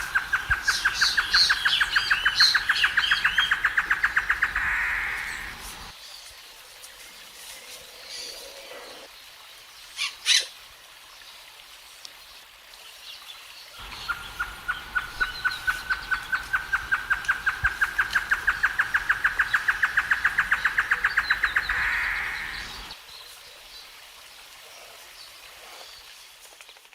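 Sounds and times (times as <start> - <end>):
bird song speeding up: 0.0 - 5.9, 13.8 - 22.9.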